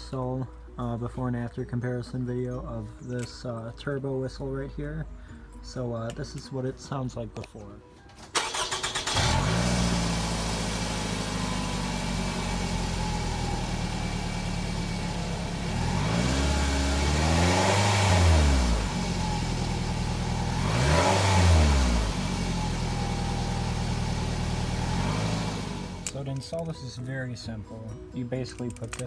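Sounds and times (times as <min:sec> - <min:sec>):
car engine starting and idling: 0:08.2 - 0:26.4
engine throttle blips: 0:08.4 - 0:26.2.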